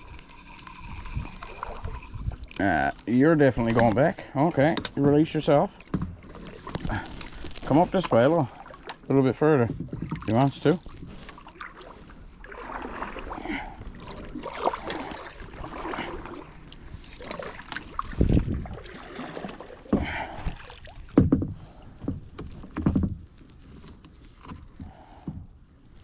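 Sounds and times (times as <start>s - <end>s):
water sloshing around a kayak: 0.0s - 26.0s
gear knocking against hull: 3.4s - 11.0s.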